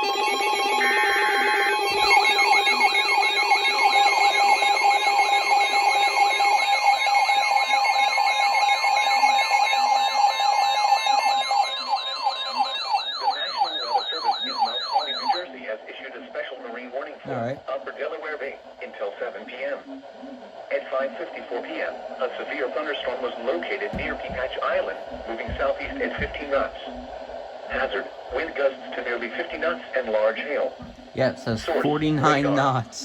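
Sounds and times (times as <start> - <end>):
siren tones sweeping up and down: 0.0 - 15.4
two-tone attention signal: 0.0 - 15.4, 24.0 - 27.0
fast electronic warble: 8.4 - 15.4, 24.0 - 28.8.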